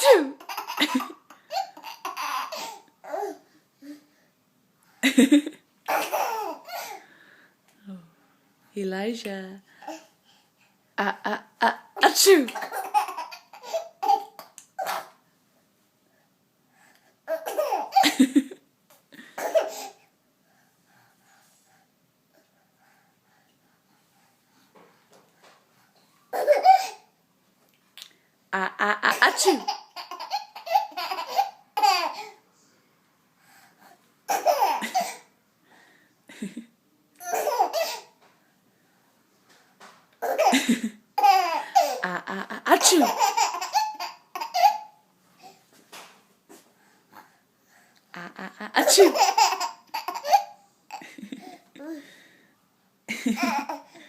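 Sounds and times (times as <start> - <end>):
baby laughing: 0.0 - 3.4, 5.2 - 7.0, 12.0 - 15.1, 17.3 - 18.5, 26.3 - 27.0, 29.1 - 32.3, 34.3 - 35.3, 37.2 - 38.2, 40.2 - 45.0, 48.2 - 51.9, 53.1 - 54.0.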